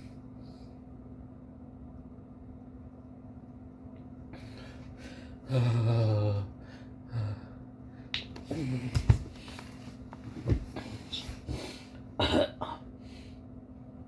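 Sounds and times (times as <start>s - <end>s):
man groaning low: 5.4s - 7.6s.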